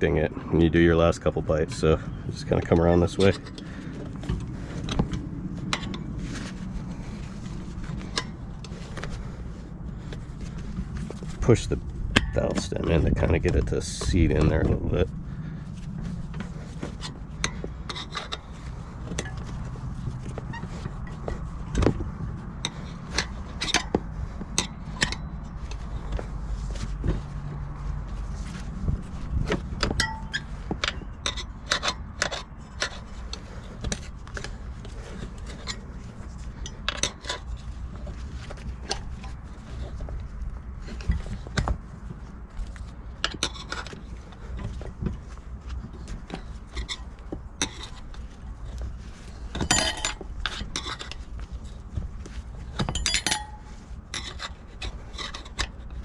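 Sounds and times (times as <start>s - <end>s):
low steady hum: 0.0s - 56.0s
metal tire spoons clinking: 22.6s - 26.4s, 29.8s - 37.6s, 49.3s - 51.2s, 52.6s - 55.8s.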